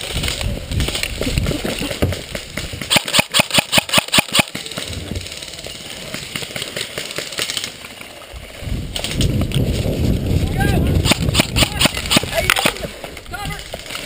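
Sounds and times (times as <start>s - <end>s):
players shuffling and rustling: 0.0s - 2.9s, 4.4s - 14.0s
airsoft rifle firing rapidly: 2.9s - 4.6s, 11.0s - 12.9s.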